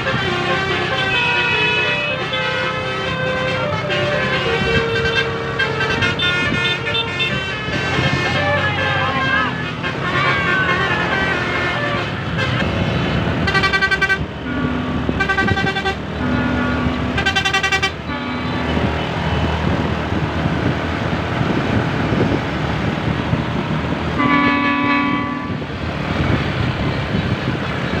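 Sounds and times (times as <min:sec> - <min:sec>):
musical air horn melody: 0:00.0 - 0:12.8, 0:13.4 - 0:18.8, 0:24.2 - 0:25.7
vehicle engine and road noise: 0:00.0 - 0:28.0.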